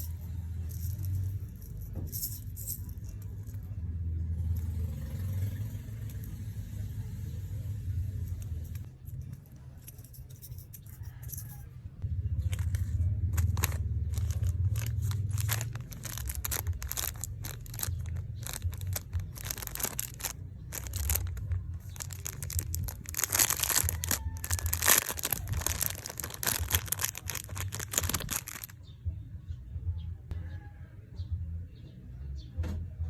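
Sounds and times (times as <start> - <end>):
packaging torn and crinkled: 12.5 - 28.7.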